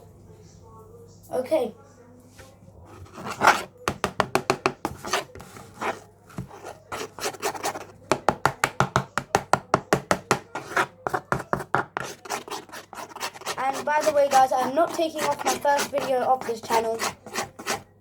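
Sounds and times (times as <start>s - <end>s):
utensil beating batter in bowl: 2.8s - 18.0s.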